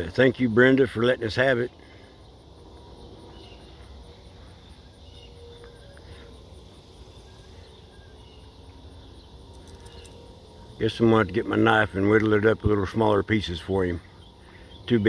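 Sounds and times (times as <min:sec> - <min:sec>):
insect chirp pulsing: 0:00.0 - 0:15.0.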